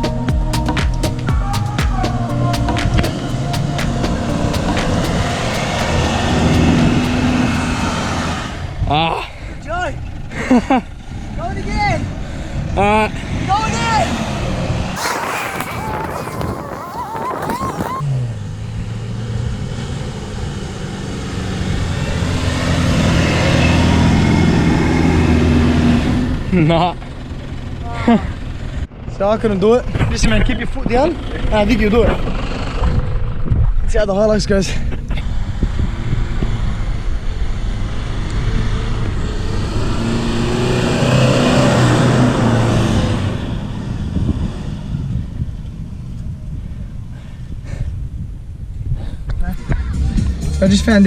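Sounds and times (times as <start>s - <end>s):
sand and tyre noise: 2.0s - 49.9s
engine working hard: 2.4s - 8.8s
car engine revving hard: 3.1s - 8.6s, 35.6s - 43.9s.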